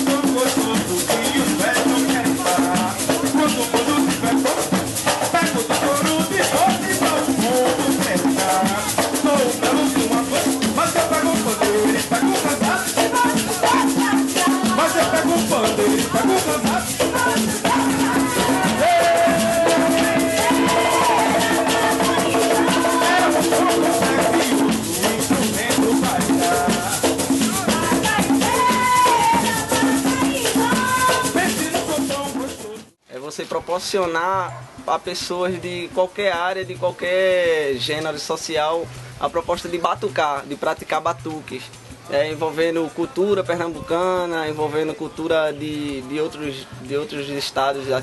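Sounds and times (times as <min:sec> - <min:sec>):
person singing: 0:00.0 - 0:32.9
drums: 0:00.0 - 0:47.0
shaker rhythm: 0:00.0 - 0:48.0.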